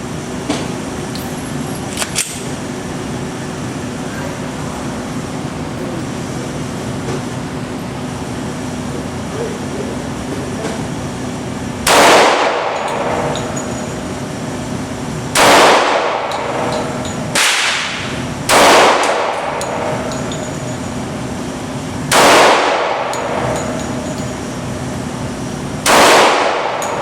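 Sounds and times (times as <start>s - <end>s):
pistol shots: 11.8s - 13.2s, 15.3s - 16.6s, 17.3s - 20.0s, 22.1s - 23.6s, 25.8s - 27.0s.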